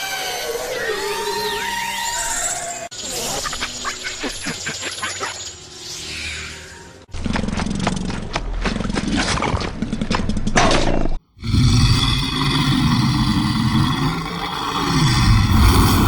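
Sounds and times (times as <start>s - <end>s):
monster roar: 11.4s - 16.0s.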